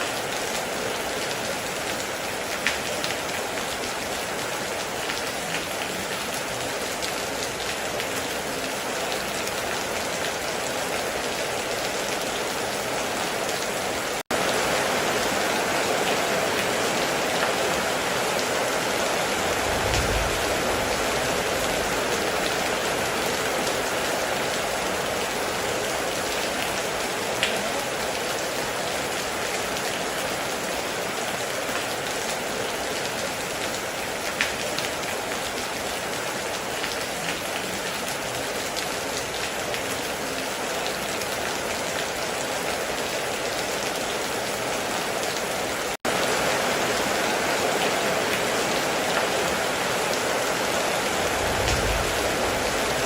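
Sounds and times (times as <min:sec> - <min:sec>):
heavy rain on a metal roof: 0:00.0 - 0:53.0
short low rumble: 0:19.5 - 0:21.7, 0:51.3 - 0:53.0.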